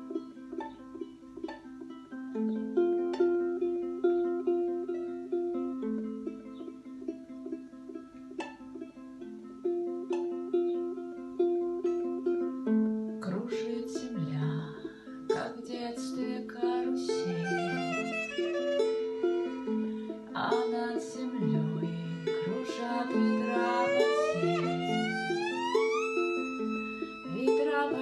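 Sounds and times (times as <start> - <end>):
ukulele plucked notes: 0.0 - 28.0
person singing: 13.2 - 28.0.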